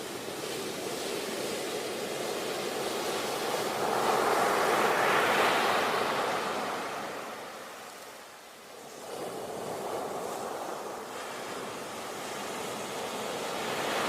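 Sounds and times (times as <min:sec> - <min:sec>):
ocean waves breaking: 0:00.0 - 0:08.0, 0:08.8 - 0:14.0.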